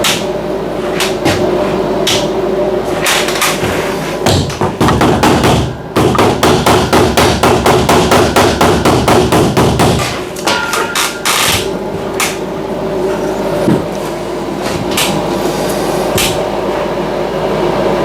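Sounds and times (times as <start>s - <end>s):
steady machine hum: 0.0s - 18.0s
hammer striking metal: 4.3s - 11.5s.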